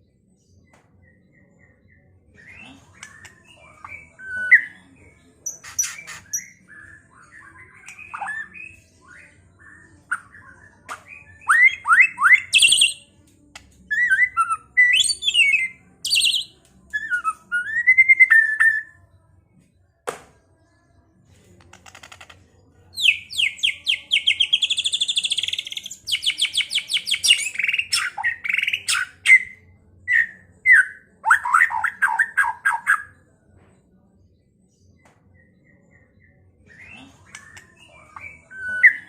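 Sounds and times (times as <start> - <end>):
songbird singing whistles: 5.6 - 13.0, 13.9 - 19.0, 23.0 - 33.1, 35.4 - 39.0.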